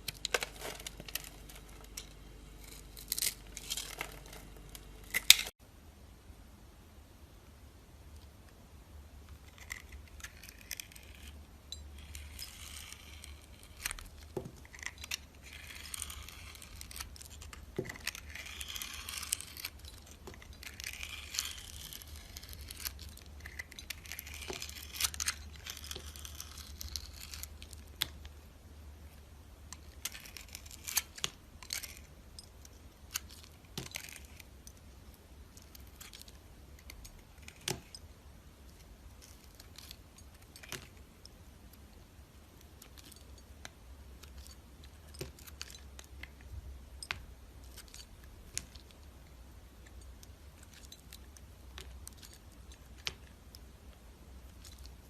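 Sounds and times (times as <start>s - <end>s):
knife scraping dry soap: 12.0s - 28.2s, 29.7s - 32.1s, 33.0s - 34.6s.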